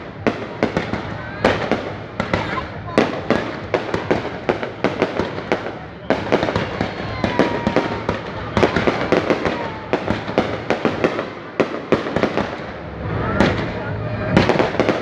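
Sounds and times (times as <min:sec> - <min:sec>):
fireworks bangs and crackling: 0:00.0 - 0:15.0
fireworks whistles: 0:00.0 - 0:15.0.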